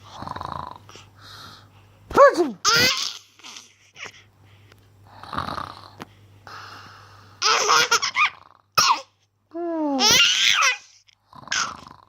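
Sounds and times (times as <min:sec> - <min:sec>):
baby laughing: 0:02.6 - 0:04.2, 0:07.4 - 0:09.1, 0:10.0 - 0:10.9.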